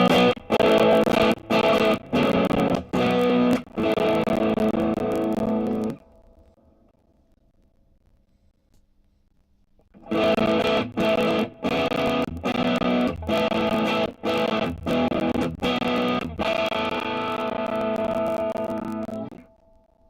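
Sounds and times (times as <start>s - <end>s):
distorted electric guitar chords: 0.0s - 6.5s, 10.0s - 20.0s.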